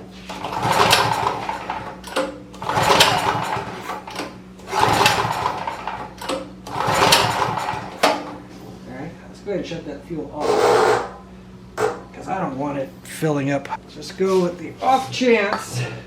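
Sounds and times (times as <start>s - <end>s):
generator engine cranking: 0.2s - 8.3s.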